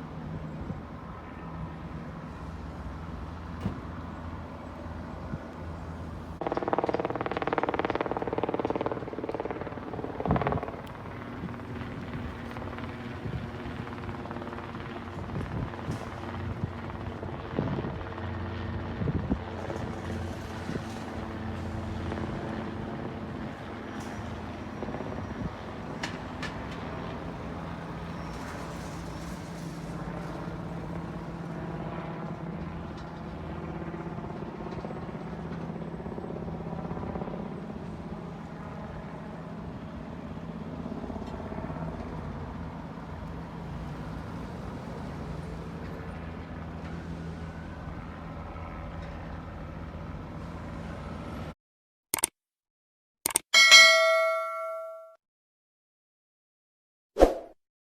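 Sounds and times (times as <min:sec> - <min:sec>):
helicopter engine and rotor drone: 0:00.0 - 0:51.6
brief clicks: 0:53.3 - 0:53.5.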